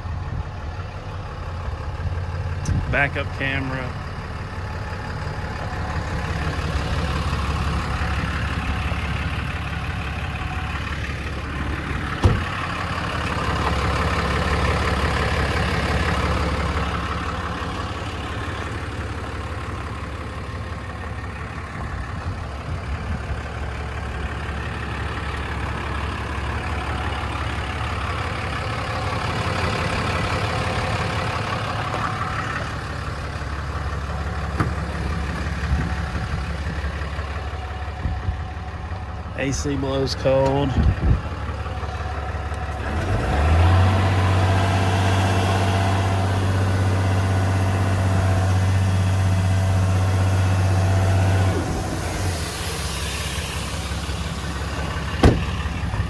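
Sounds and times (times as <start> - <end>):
engine idling: 0.0 - 56.0
sharp knock: 55.2 - 55.6.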